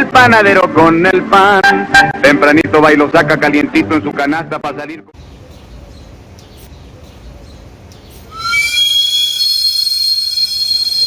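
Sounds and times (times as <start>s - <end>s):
low rumble of street noise: 0.0s - 11.0s
shrill steam whistle: 8.3s - 11.0s.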